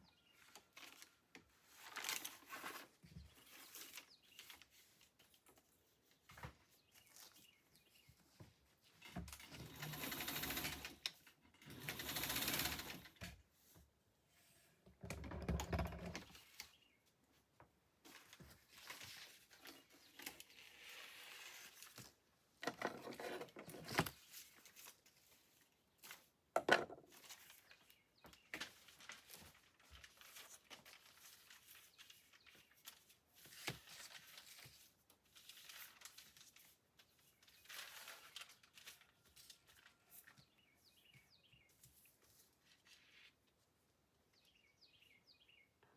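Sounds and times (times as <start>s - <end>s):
paper rustling and tearing: 28.6s - 40.0s.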